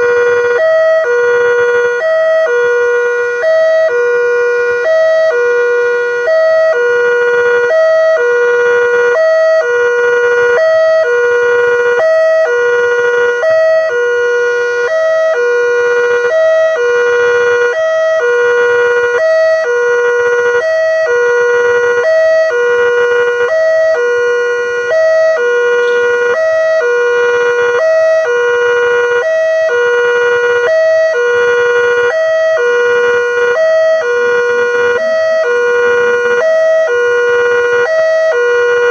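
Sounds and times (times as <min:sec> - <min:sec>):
level crossing two-tone alarm: 0:00.0 - 0:38.9.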